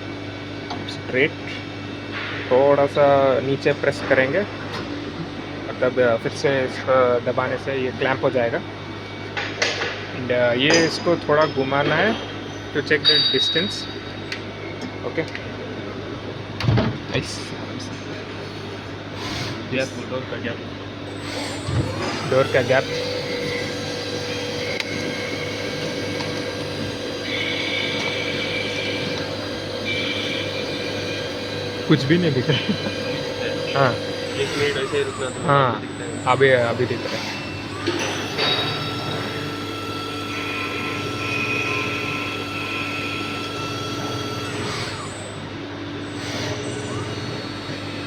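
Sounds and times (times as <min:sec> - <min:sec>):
high machine whine: 0:00.0 - 0:48.0
machine humming: 0:17.2 - 0:48.0.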